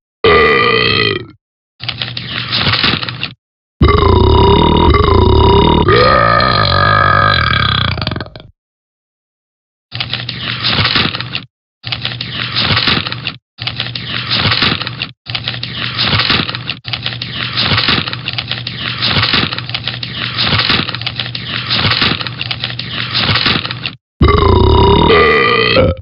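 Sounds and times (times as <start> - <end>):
newspaper rustling and crinkling: 1.8 - 3.4, 10.0 - 24.0.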